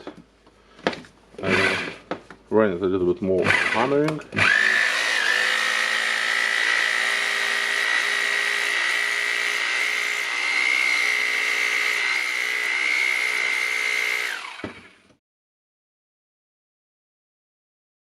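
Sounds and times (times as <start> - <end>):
hammer drill motor whine: 1.4 - 2.0, 3.4 - 15.2.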